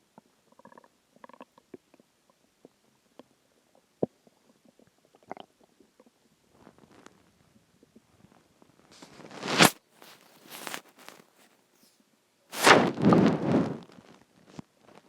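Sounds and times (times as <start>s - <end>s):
stomach gurgling: 0.0s - 11.4s, 12.6s - 15.0s
sharp pop: 9.4s - 11.2s, 12.5s - 13.1s.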